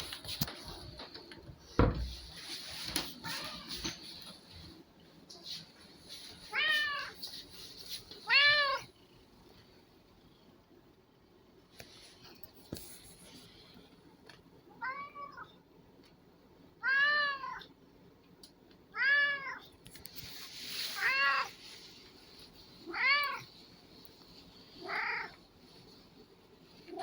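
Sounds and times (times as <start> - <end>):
cat meowing: 6.5 - 7.2, 8.2 - 8.9, 16.8 - 17.7, 18.9 - 19.7, 22.9 - 23.5, 24.8 - 25.4.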